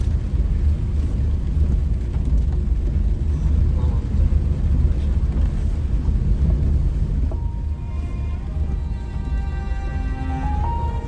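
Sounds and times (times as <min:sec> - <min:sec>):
wind buffeting microphone: 0:00.0 - 0:08.7.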